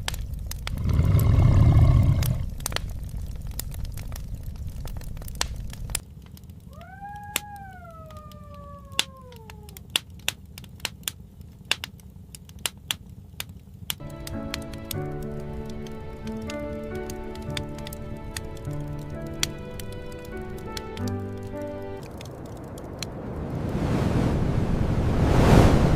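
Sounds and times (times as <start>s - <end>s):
sharp crackles: 0.0s - 24.0s
long animal call: 6.6s - 9.9s
low rumble: 21.4s - 25.9s.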